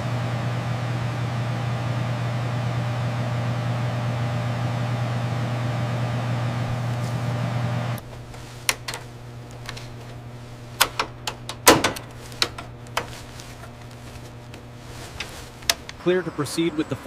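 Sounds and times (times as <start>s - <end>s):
mechanical hum: 0.0s - 17.0s
sharp clicks and knocks: 10.8s - 14.6s, 15.2s - 16.0s.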